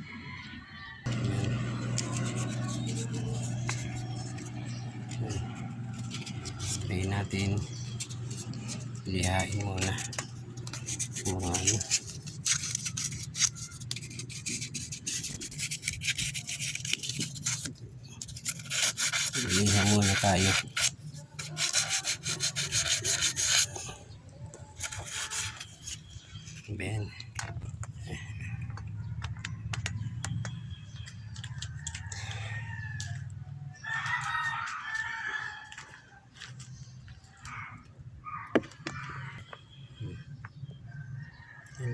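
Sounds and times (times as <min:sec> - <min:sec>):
rooster crowing: 0:00.0 - 0:07.2, 0:31.3 - 0:36.2, 0:40.9 - 0:41.9
low hum: 0:01.1 - 0:13.2
sandpaper rubbing metal: 0:01.1 - 0:24.0, 0:24.8 - 0:26.2.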